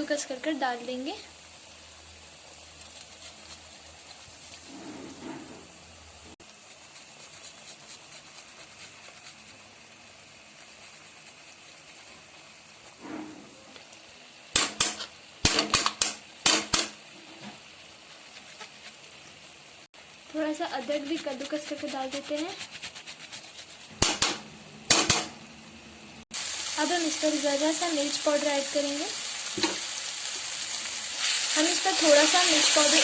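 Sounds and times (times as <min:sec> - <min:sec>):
faint sizzle from pan: 0:00.0 - 0:23.5, 0:24.3 - 0:33.0
garlic grating strokes: 0:02.5 - 0:05.8, 0:06.4 - 0:13.4, 0:17.9 - 0:19.4, 0:20.4 - 0:24.2.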